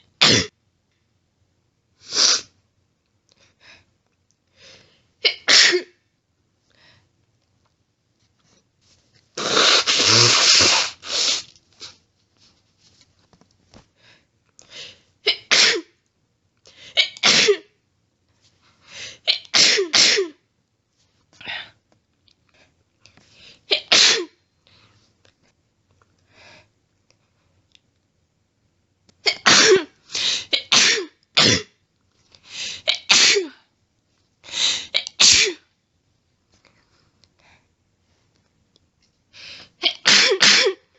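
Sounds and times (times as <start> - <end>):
person sneezing: 0.2 - 0.5, 2.0 - 2.5, 9.4 - 12.0, 15.2 - 15.9, 17.0 - 17.7, 19.3 - 20.4, 23.7 - 24.4, 29.2 - 31.8, 32.6 - 33.6, 34.5 - 35.6, 39.8 - 40.9
faint sniffs: 9.4 - 12.0.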